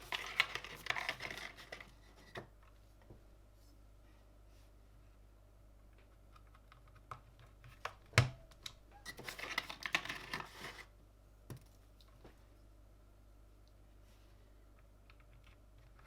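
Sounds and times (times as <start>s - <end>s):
plastic keyboard parts clicking: 0.0s - 1.8s, 6.0s - 10.5s.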